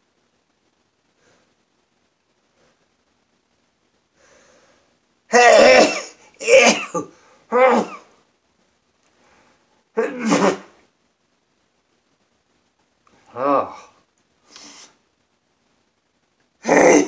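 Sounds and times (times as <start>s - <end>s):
faint intake of breath: 4.1s - 5.0s, 14.4s - 15.0s
man sneezing: 5.3s - 8.1s, 10.0s - 10.8s.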